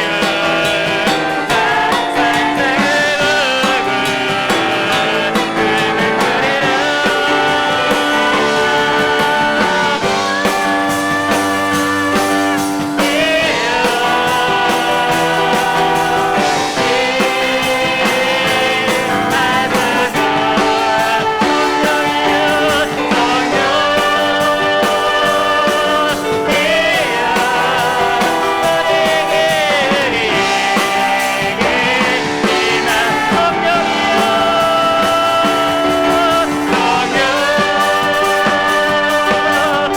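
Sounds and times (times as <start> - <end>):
drums: 0.0 - 39.9
people singing praise song: 0.0 - 39.9
piano: 0.0 - 39.9.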